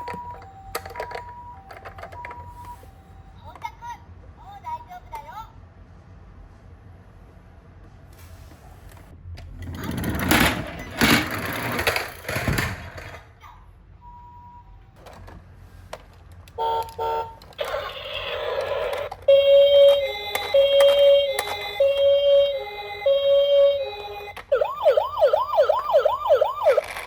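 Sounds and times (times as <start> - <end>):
plastic toy cars clattering: 0.0 - 2.4, 9.4 - 13.3, 15.0 - 22.0, 26.7 - 27.0
toy electronic siren: 16.6 - 27.0.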